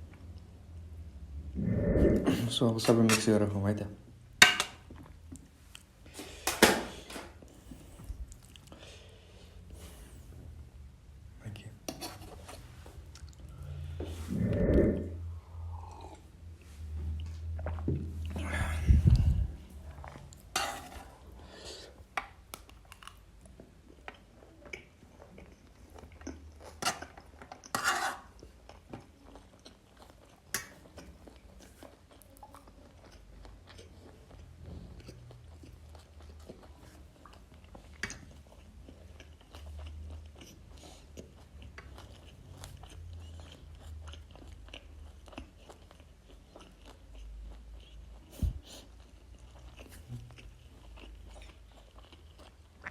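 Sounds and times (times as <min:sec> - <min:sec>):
close chewing with crunches: 0:07.4 - 0:09.1, 0:15.8 - 0:52.9.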